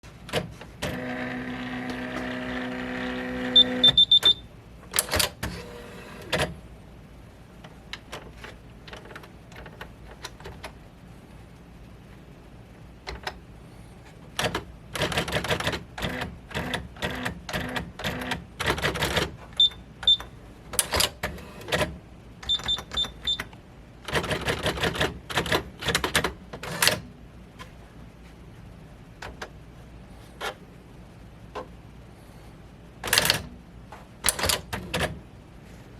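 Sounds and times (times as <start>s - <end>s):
typewriter motor hum: 0.3s - 4.1s, 14.4s - 19.4s
typewriter rapid mechanical clicks: 14.4s - 19.4s, 24.0s - 27.0s, 34.2s - 35.2s.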